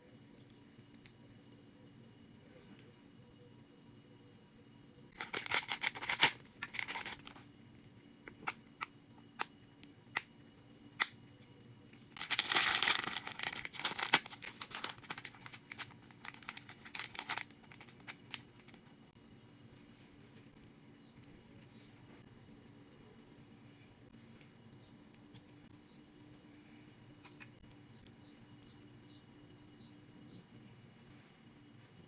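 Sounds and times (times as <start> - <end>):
packaging rustling: 5.2 - 7.4, 12.1 - 18.8.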